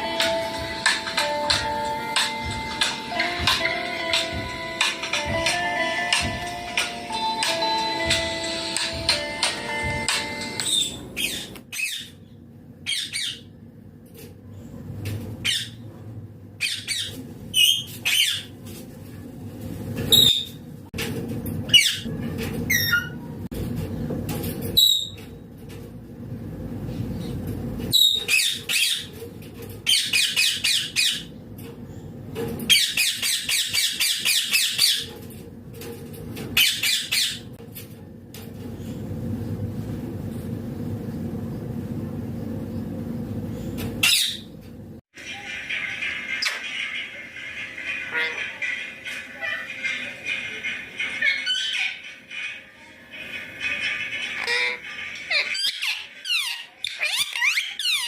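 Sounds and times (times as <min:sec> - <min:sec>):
parakeet squawking and screeching: 0:10.6 - 0:13.5, 0:15.4 - 0:15.9, 0:16.6 - 0:18.6, 0:20.1 - 0:20.6, 0:21.7 - 0:22.1, 0:22.7 - 0:23.3, 0:27.9 - 0:29.2, 0:29.8 - 0:31.4, 0:32.7 - 0:35.2, 0:36.6 - 0:37.6, 0:44.0 - 0:44.5, 0:45.4 - 0:52.7, 0:53.4 - 0:58.0.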